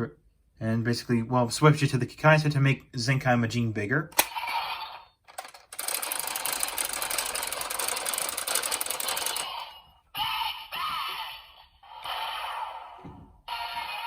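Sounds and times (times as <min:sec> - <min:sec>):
toy electronic sound effects: 0:04.2 - 0:14.0
toy belt mechanical clicking: 0:05.2 - 0:09.8
toy speaker voice: 0:09.2 - 0:14.0.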